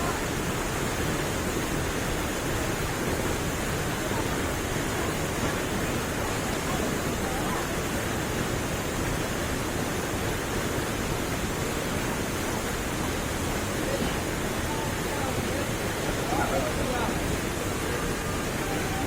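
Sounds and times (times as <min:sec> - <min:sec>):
waterfall roaring: 0:00.0 - 0:19.0.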